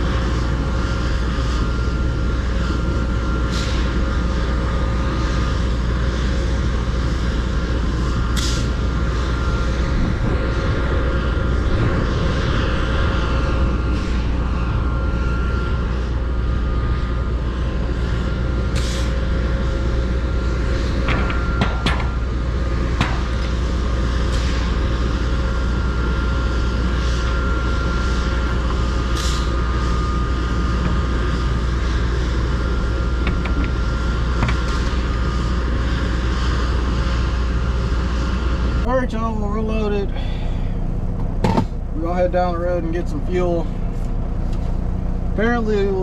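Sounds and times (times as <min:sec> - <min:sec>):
diesel truck engine running: 0:04.0 - 0:38.0, 0:38.8 - 0:46.0.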